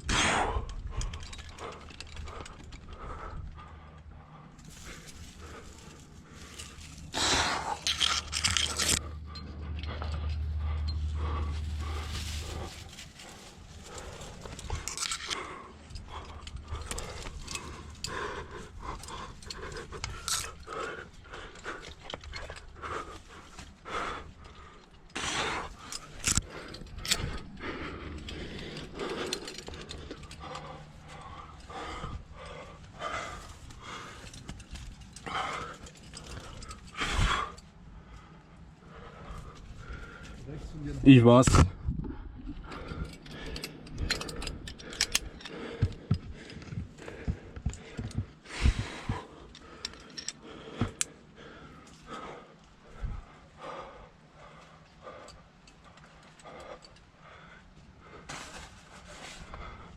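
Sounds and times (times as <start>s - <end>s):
low rumble: 0.0s - 24.8s
climber breathing hard: 0.0s - 59.9s
climbing gear clinking: 0.5s - 40.4s, 42.5s - 59.9s.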